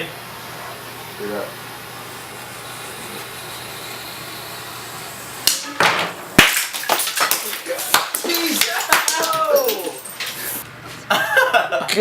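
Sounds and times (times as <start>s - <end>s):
steady low hum: 0.0s - 8.2s
firecracker bangs: 5.4s - 9.8s.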